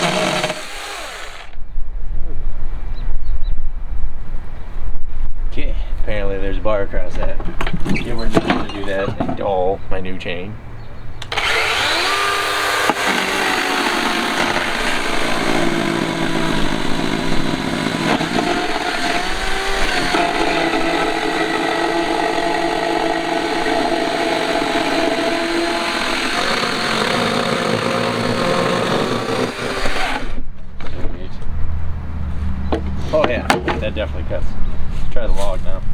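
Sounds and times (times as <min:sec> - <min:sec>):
electric chainsaw cutting wood: 0:00.0 - 0:01.6, 0:11.2 - 0:30.4.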